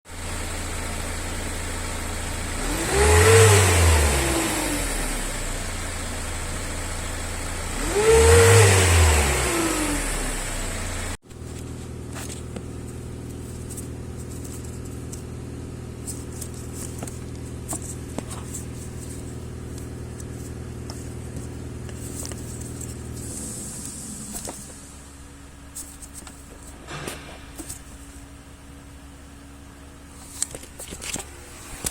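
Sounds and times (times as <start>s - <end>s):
diesel van engine idling and revving: 0.1s - 11.2s.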